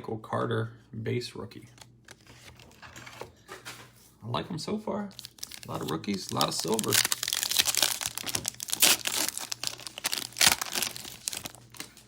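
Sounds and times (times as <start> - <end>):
plastic wrapper crinkling: 5.1 - 12.0
wrapper ripping: 5.1 - 12.0.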